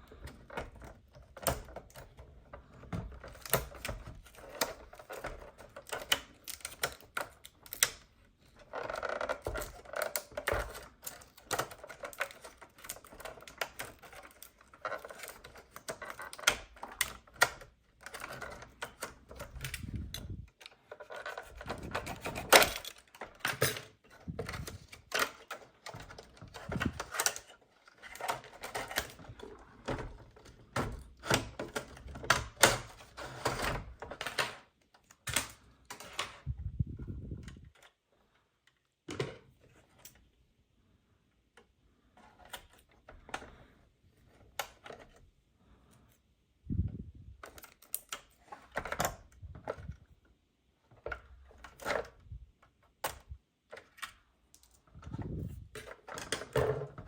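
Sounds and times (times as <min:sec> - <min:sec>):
plastic toy parts clicking: 0:00.1 - 0:36.2, 0:47.4 - 0:49.9.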